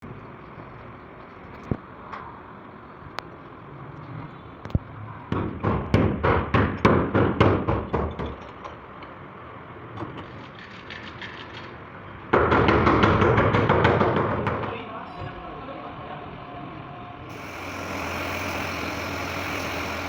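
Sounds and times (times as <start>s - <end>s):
loud dense noise: 17.3s - 20.0s.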